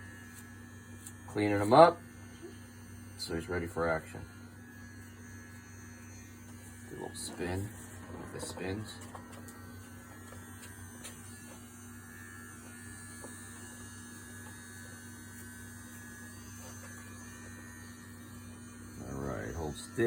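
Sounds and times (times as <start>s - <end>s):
electric trimmer buzzing: 0.0s - 20.0s.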